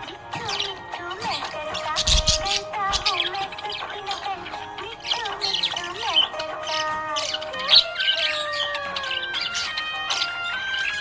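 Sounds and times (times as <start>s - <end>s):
background music: 0.0s - 11.0s
budgies chirping and squawking: 0.0s - 11.0s.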